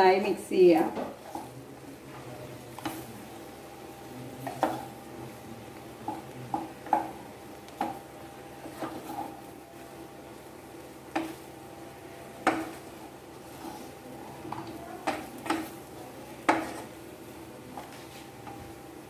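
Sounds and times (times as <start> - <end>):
spoon scraping pan: 8.6 - 9.5, 12.4 - 17.0.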